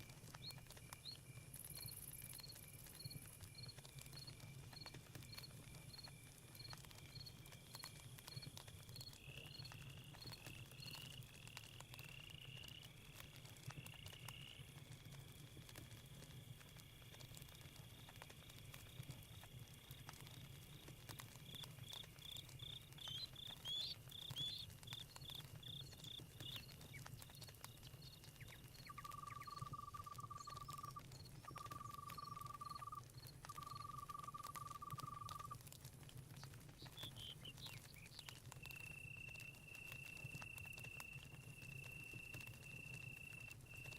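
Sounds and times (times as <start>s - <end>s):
campfire crackling: 0.0s - 43.9s
crickets trilling: 0.3s - 13.0s, 21.4s - 35.6s
high chirps: 28.8s - 35.6s
long even-pitched calls: 28.9s - 35.6s.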